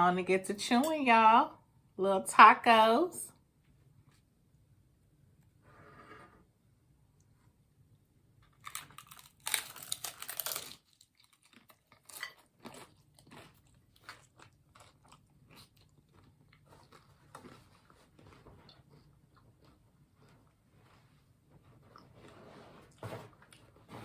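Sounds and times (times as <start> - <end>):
crunchy chewing: 8.5 - 20.6.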